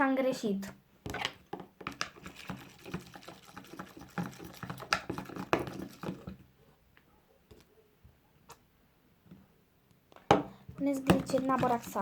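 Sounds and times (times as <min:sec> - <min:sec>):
slime squelching and clicking: 0:01.2 - 0:06.4.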